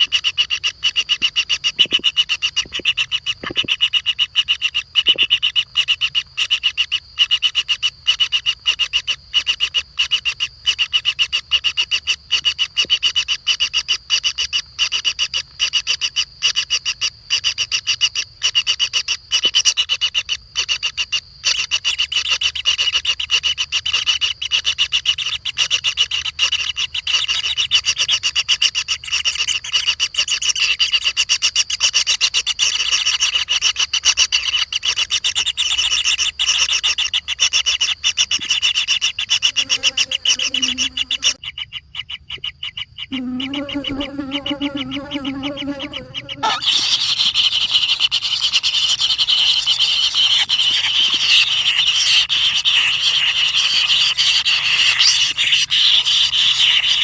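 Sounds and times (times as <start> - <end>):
animal calling in a rattle: 0.0 - 57.0.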